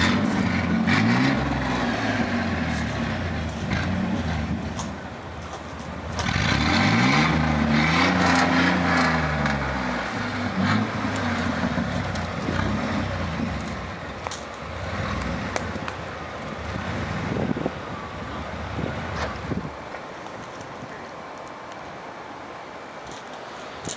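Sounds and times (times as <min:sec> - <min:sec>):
pickup engine revving: 0:00.0 - 0:04.7, 0:06.1 - 0:13.9.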